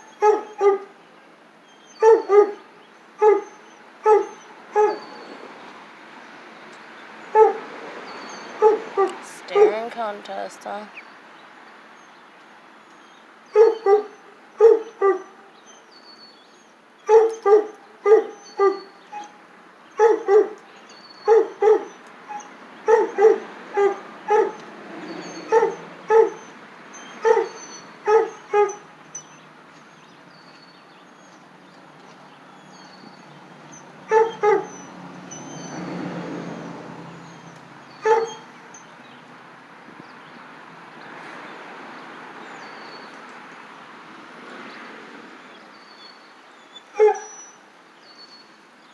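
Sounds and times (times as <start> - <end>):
dog barking: 0.2 - 0.9, 2.0 - 2.6, 3.2 - 5.1, 7.4 - 7.6, 8.6 - 9.8, 13.6 - 15.4, 17.1 - 19.4, 20.0 - 20.6, 21.3 - 24.6, 25.5 - 26.5, 27.2 - 28.8, 34.1 - 34.8, 38.0 - 38.5, 47.0 - 47.4.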